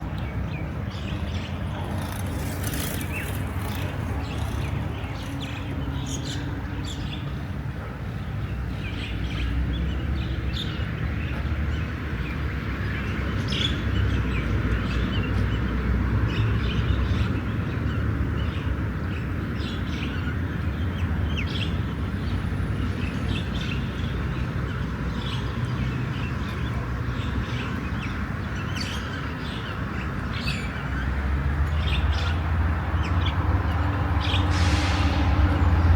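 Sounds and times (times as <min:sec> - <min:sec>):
small birds chirping: 0:00.2 - 0:07.2.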